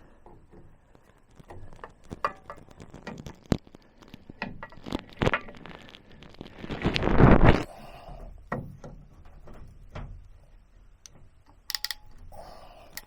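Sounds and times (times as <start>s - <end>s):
parts clicking and knocking: 11.0s - 13.0s.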